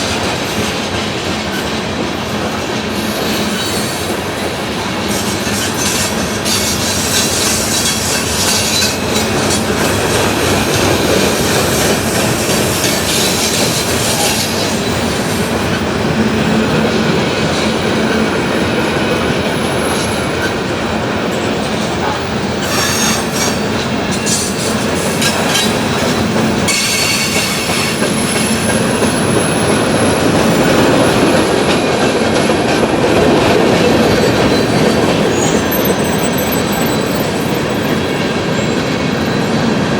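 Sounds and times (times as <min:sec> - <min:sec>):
freight train wheels rumbling: 0:00.0 - 0:39.9
high-pitched wheel squeal: 0:22.6 - 0:26.1, 0:26.7 - 0:28.6, 0:34.0 - 0:38.8.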